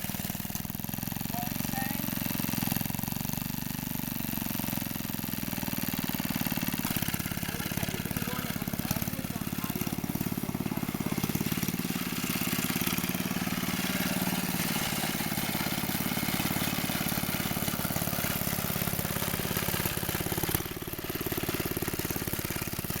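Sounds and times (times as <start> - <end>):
lawn mower engine running: 0.0 - 23.0.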